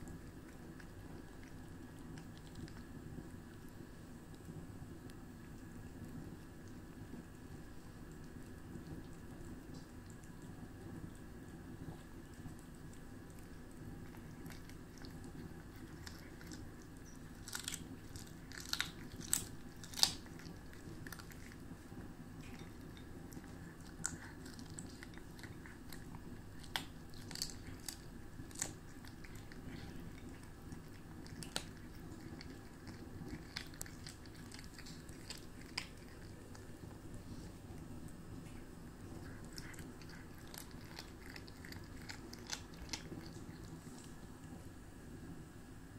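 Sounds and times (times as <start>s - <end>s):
cat chewing crunches: 0.0s - 44.5s
steady low hum: 0.0s - 45.9s.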